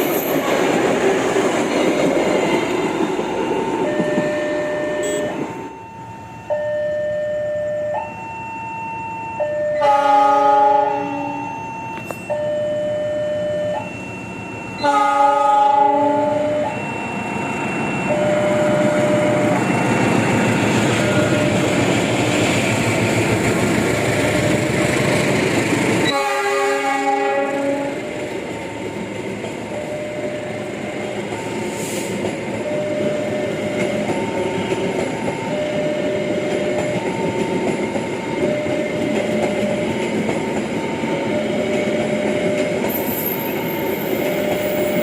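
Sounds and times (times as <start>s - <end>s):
train rumble and wheel clatter: 0.0s - 6.6s, 7.9s - 45.0s
level crossing alarm: 3.0s - 25.0s, 26.0s - 45.0s
train horn blasts: 3.9s - 5.6s, 9.8s - 11.5s, 14.8s - 16.7s, 26.0s - 28.1s.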